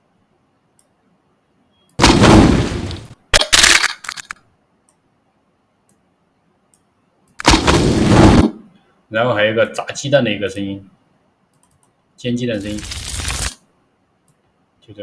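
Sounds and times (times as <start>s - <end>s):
loud crash: 2.0s - 3.1s, 7.5s - 8.6s
sharp cracks: 2.0s - 4.4s, 7.3s - 8.6s.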